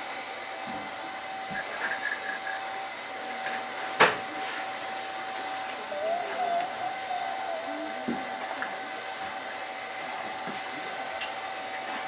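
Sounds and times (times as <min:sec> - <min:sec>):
constant whining tone: 0:04.4 - 0:10.5.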